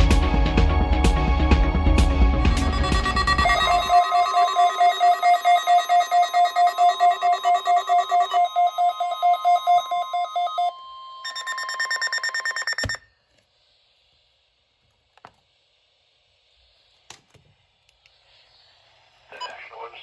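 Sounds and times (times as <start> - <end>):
rapid electronic beeping: 2.4 - 13.0
steady alarm tone: 2.4 - 13.0.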